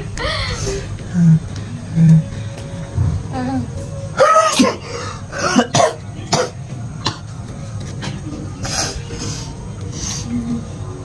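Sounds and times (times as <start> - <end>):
person coughing: 5.4 - 7.2.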